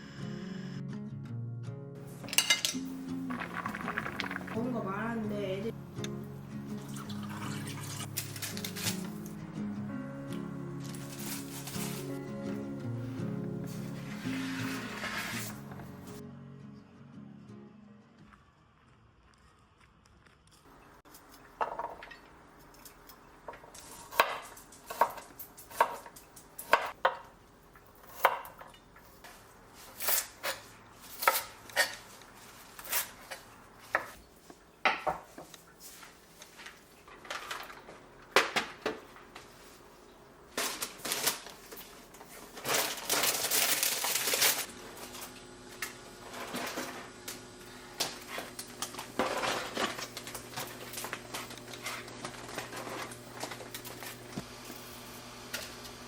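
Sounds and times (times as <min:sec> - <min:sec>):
utensils and dishes clinking: 0:02.2 - 0:04.6.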